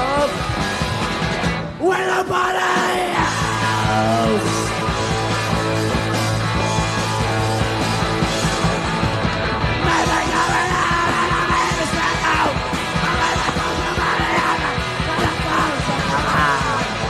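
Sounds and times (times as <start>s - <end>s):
punk rock band playing: 0.0s - 17.0s
person shouting vocals: 9.8s - 17.0s.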